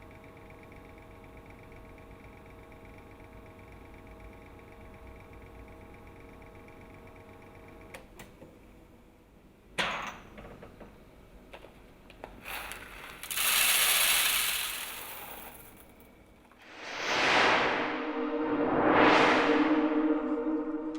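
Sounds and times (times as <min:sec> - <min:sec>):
loud steam hiss: 0:12.4 - 0:15.8
coffee machine motor hum: 0:12.4 - 0:15.9.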